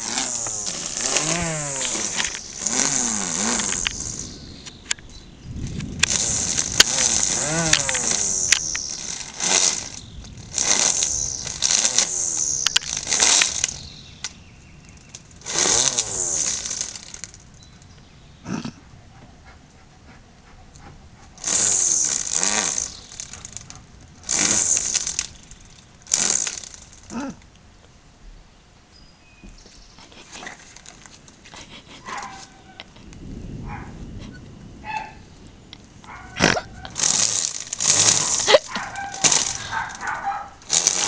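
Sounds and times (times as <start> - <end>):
string trimmer engine revving: 0.0 - 4.7, 5.7 - 14.0, 15.0 - 17.4, 21.4 - 27.4, 36.4 - 41.0.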